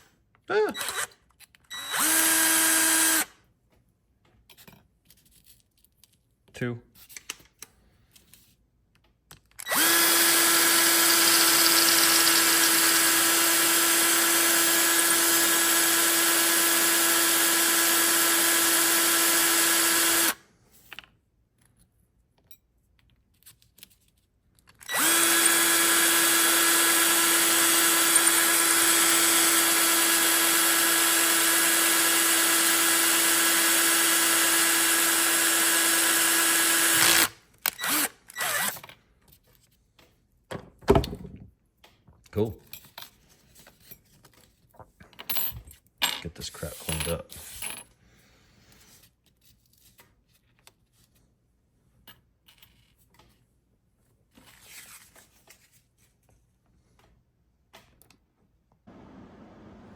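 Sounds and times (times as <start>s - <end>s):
power drill drilling out rivets: 0.8s - 3.3s, 9.6s - 20.4s, 24.8s - 38.9s.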